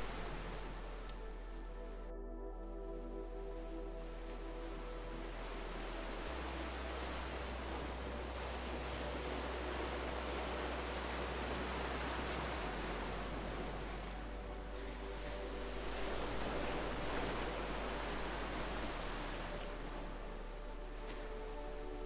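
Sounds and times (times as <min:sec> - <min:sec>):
ocean surf washing in: 0:05.6 - 0:14.2.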